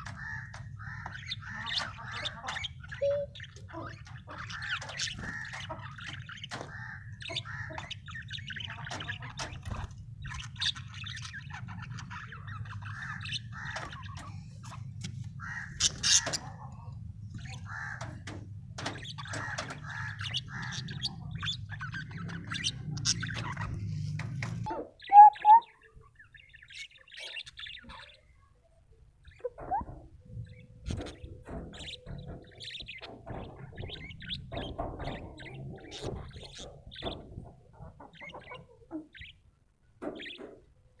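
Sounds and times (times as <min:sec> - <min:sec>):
parrots squawking: 0:00.0 - 0:14.3, 0:15.3 - 0:16.8, 0:17.4 - 0:28.2.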